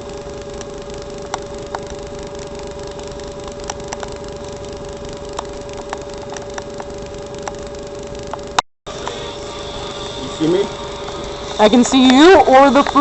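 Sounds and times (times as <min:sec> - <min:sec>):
electronic hum: 0:00.0 - 0:13.0
pulsing buzz: 0:00.0 - 0:13.0
recording hiss: 0:08.9 - 0:13.0.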